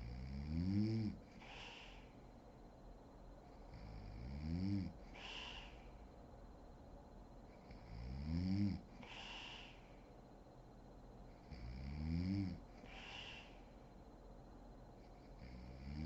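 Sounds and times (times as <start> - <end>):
woman snoring: 0.0 - 2.0, 3.8 - 5.9, 7.7 - 9.8, 11.5 - 13.6, 15.4 - 16.0
breathy exhale: 1.4 - 2.2, 5.1 - 6.1, 9.0 - 10.1, 12.8 - 13.9.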